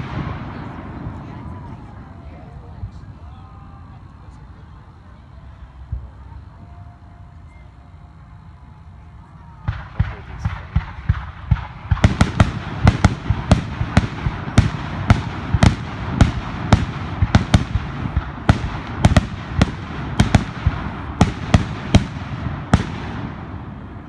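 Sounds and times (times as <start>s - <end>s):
fireworks banging: 0.0s - 3.4s, 9.6s - 24.0s
fireworks crackling: 0.0s - 8.4s, 9.2s - 24.0s.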